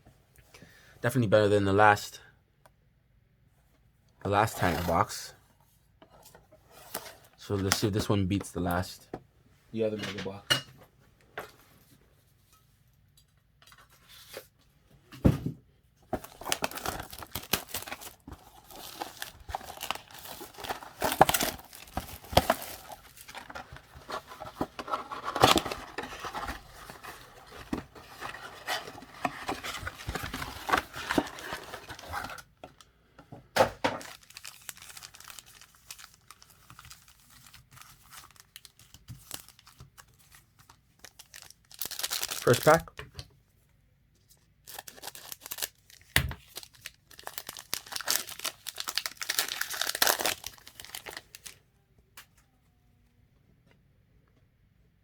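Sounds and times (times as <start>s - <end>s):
plastic wrapping tearing and crinkling: 16.2s - 32.4s, 34.0s - 42.8s, 44.6s - 51.6s.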